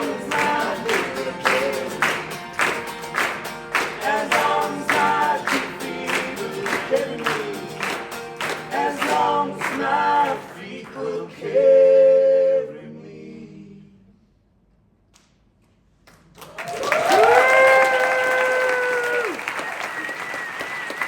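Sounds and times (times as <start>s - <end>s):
person singing: 0.0s - 2.8s, 3.8s - 10.5s
strummed acoustic guitar: 0.0s - 9.7s.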